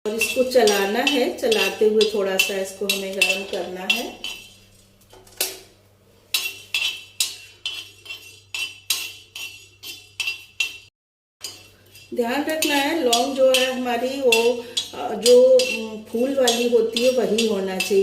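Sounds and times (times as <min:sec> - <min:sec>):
utensil scraping spices on hot pan: 0:00.1 - 0:18.0.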